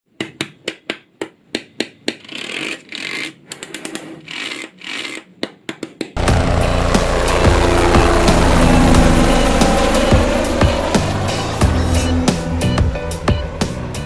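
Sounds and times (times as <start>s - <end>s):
music: 6.2s - 14.0s.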